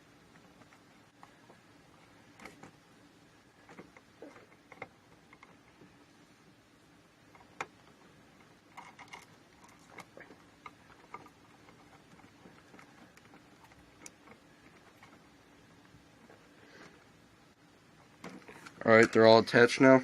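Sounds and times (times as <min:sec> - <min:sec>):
faint clicks of wire handling: 0:00.3 - 0:02.8, 0:07.3 - 0:17.1.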